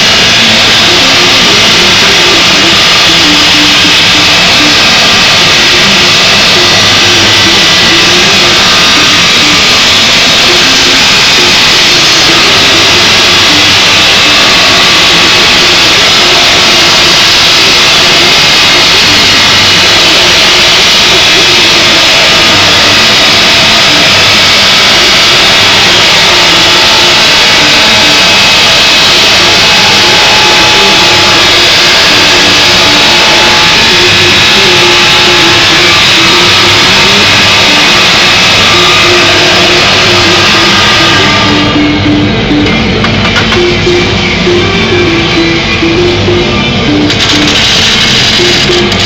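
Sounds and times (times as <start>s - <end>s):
welding arc hissing and crackling: 0.0s - 41.8s, 47.1s - 49.0s.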